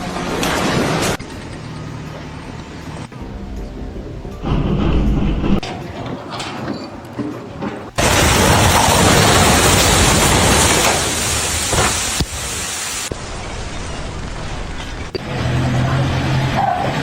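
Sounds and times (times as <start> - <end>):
loud steady rushing noise: 2.0 - 5.7.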